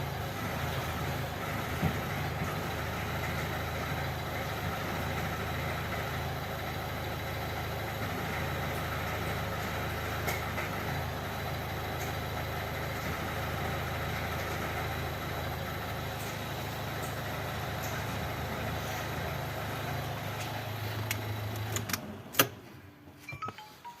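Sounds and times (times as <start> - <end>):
car engine idling: 0.0 - 22.3
engine stopping with sharp clack: 0.0 - 22.8.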